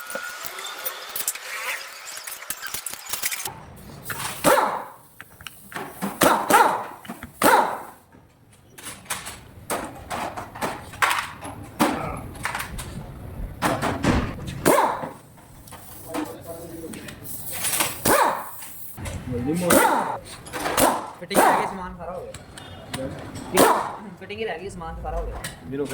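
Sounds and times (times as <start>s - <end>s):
dog barking: 4.4s - 5.0s, 6.2s - 8.0s, 14.6s - 15.2s, 18.0s - 18.5s, 19.7s - 20.2s, 20.8s - 21.8s, 23.6s - 24.0s.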